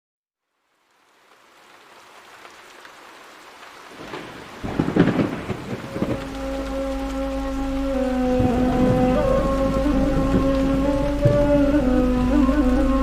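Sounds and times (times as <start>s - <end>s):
rain hiss: 0.4s - 13.0s
thunder rumble: 3.9s - 13.0s.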